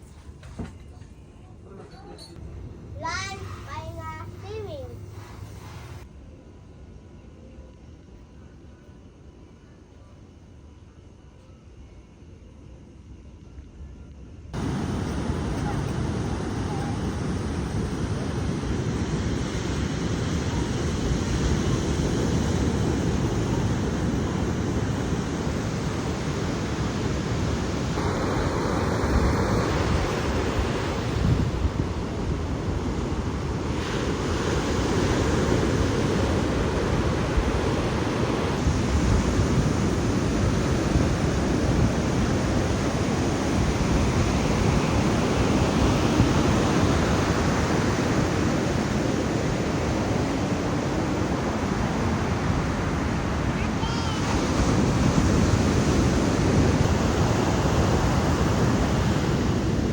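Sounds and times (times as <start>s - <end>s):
ocean surf breaking: 14.6s - 59.9s
wind buffeting microphone: 14.6s - 59.9s.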